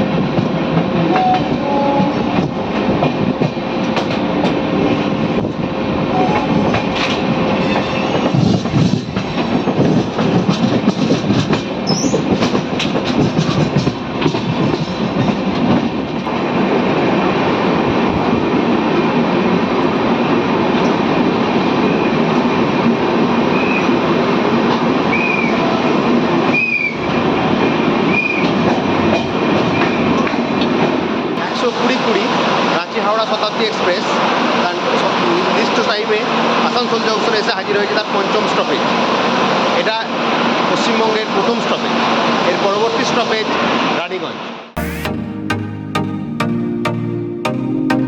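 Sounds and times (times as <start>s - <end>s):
train rumble: 0.0s - 44.3s
wheels clattering over rail joints: 6.4s - 16.4s.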